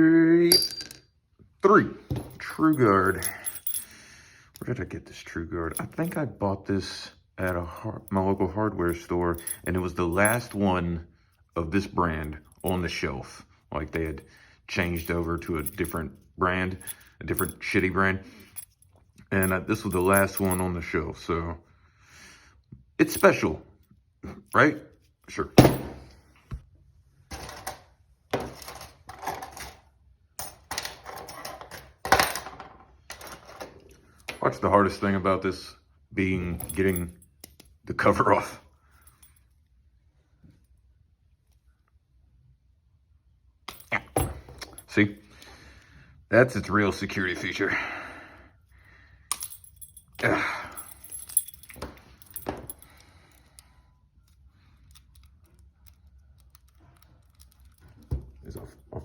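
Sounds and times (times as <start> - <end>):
padlock clicking and rattling: 50.8 - 58.8.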